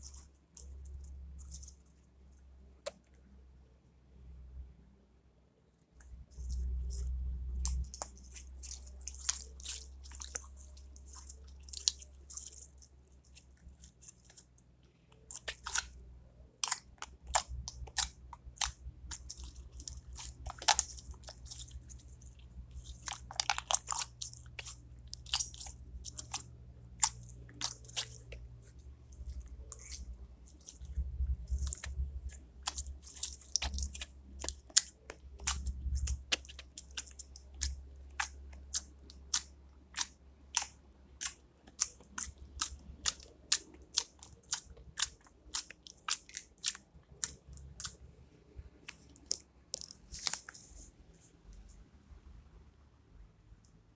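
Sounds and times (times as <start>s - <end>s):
slime squeezed by hand crackling: 16.6s - 48.0s.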